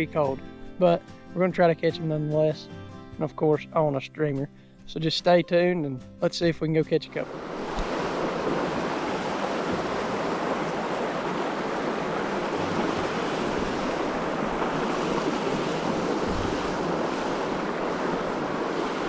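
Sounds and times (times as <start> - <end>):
creek water rushing: 7.2 - 19.0
low bumps: 11.3 - 18.7.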